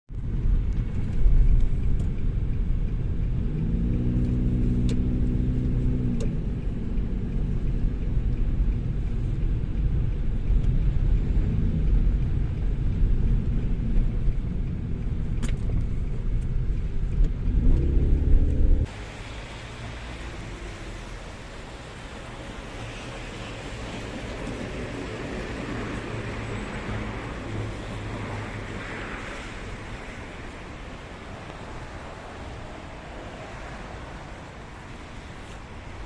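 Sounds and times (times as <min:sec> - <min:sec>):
traffic rumble and road noise: 0:00.1 - 0:36.0
vehicle engine passing: 0:17.4 - 0:22.3.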